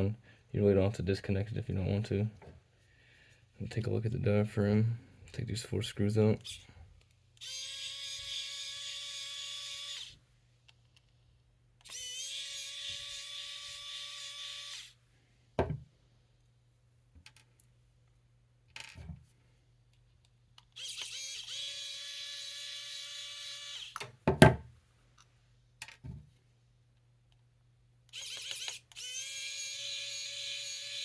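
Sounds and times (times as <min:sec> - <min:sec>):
power screwdriver whining: 0:07.4 - 0:10.2, 0:11.8 - 0:15.0, 0:20.7 - 0:24.1, 0:28.1 - 0:31.0.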